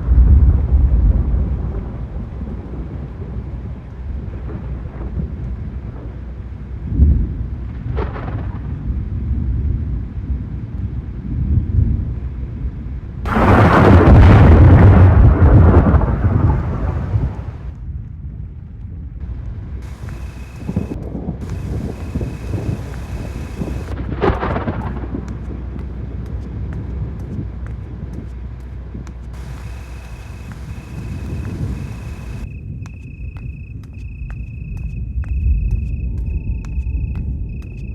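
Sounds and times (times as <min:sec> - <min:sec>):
thunder rumble: 0:00.0 - 0:28.1, 0:29.4 - 0:32.5
loud rush of noise: 0:13.3 - 0:17.7, 0:19.2 - 0:24.5, 0:29.4 - 0:32.5
sharp thunder crack: 0:13.3 - 0:17.7, 0:19.7 - 0:25.2.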